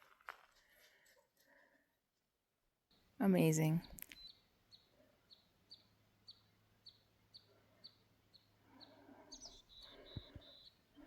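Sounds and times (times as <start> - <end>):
bird chirp: 2.9 - 11.0
faint bird call: 3.8 - 11.0.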